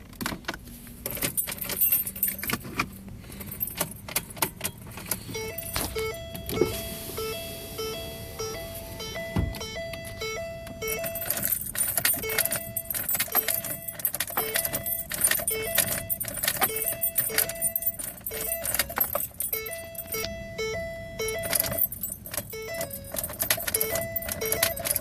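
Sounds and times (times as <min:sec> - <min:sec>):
keys jangling: 0:01.0 - 0:06.9, 0:10.9 - 0:20.3, 0:21.4 - 0:25.0
repeating two-note tone: 0:05.4 - 0:11.2.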